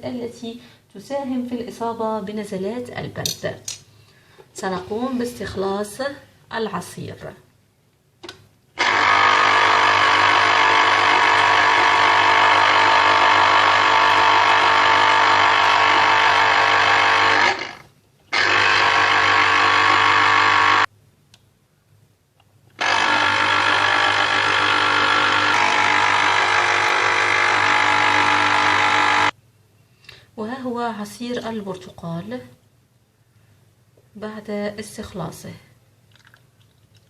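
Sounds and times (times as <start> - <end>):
electric juicer motor running: 8.8 - 20.9, 22.8 - 29.4.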